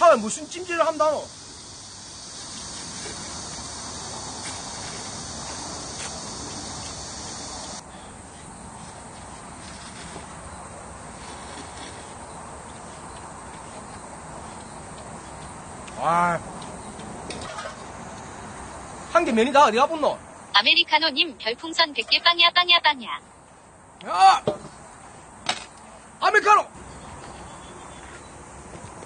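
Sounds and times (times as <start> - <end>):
wood fire hissing: 0.0 - 16.7.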